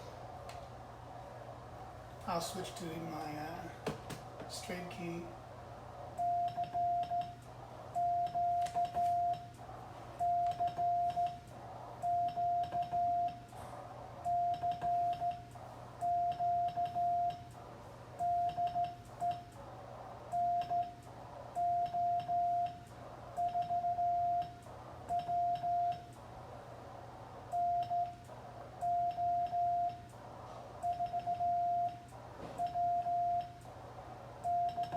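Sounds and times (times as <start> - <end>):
morse code beeps: 6.2 - 7.4, 8.0 - 9.5, 10.2 - 11.4, 12.0 - 13.4, 14.2 - 17.5, 18.2 - 19.5, 20.3 - 21.0, 21.6 - 22.8, 23.4 - 26.1, 27.5 - 28.2, 28.8 - 30.1, 30.8 - 33.6, 34.4 - 34.9.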